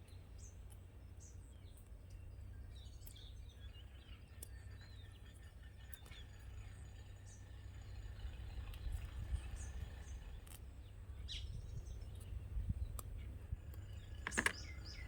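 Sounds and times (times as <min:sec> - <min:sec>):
faint clicks: 0:12.9 - 0:15.0.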